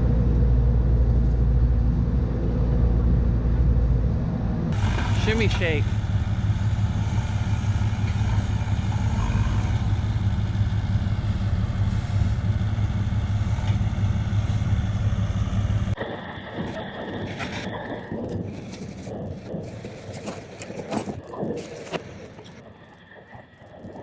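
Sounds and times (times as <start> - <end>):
excavator diesel engine humming: 0.0 - 18.0.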